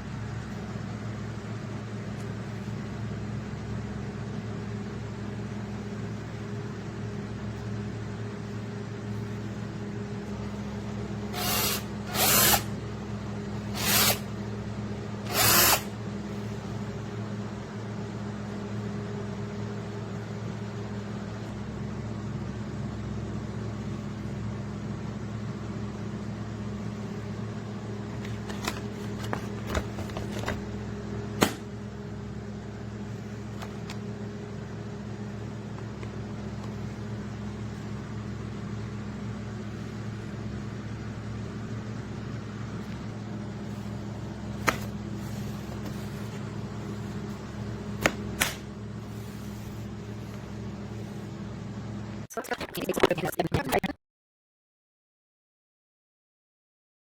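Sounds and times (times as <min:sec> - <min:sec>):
low background hum: 0:00.0 - 0:54.0
cordless drill running: 0:11.3 - 0:12.7, 0:13.7 - 0:14.3, 0:15.3 - 0:16.0.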